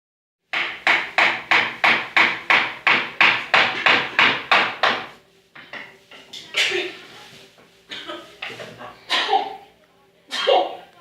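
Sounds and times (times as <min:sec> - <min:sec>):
hammer blows on wood: 0:00.5 - 0:05.2.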